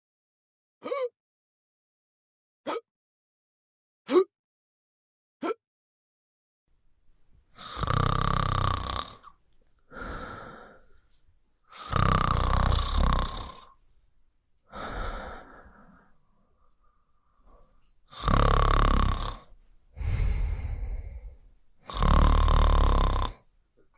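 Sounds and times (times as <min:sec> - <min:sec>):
loud snores: 0:07.6 - 0:09.3, 0:11.7 - 0:13.8, 0:18.1 - 0:23.4
soft out-breath: 0:09.8 - 0:11.2, 0:14.7 - 0:17.8, 0:19.9 - 0:21.6.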